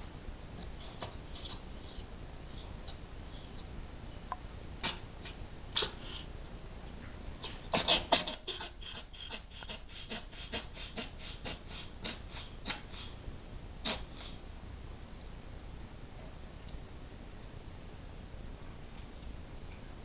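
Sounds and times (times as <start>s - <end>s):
cat reverse sneezing: 13.8s - 14.4s.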